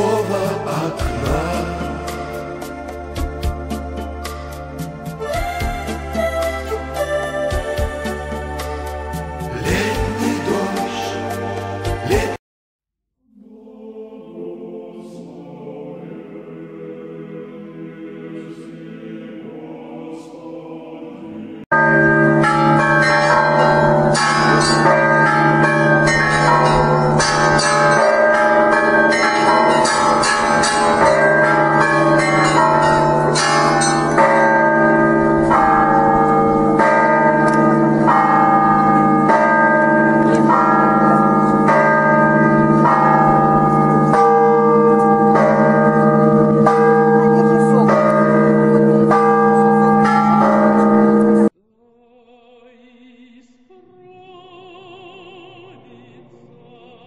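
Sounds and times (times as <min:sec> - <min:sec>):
person singing with vibrato: 0:00.0 - 0:04.4, 0:05.0 - 0:12.4, 0:13.3 - 0:57.0
church bells ringing: 0:21.7 - 0:51.6.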